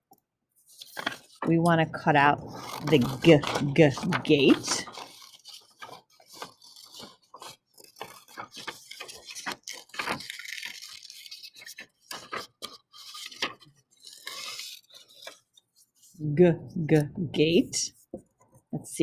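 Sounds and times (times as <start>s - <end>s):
paper rustling: 0.6s - 16.2s
scissors snipping paper: 0.8s - 1.5s, 2.2s - 15.5s.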